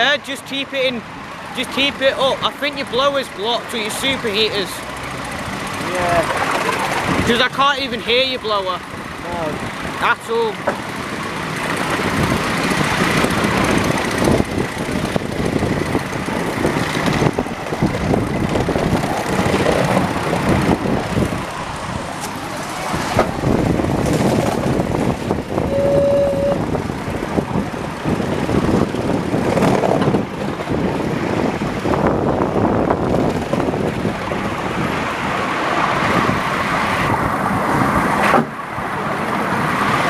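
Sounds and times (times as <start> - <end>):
miniature steam locomotive running: 4.1 - 7.2.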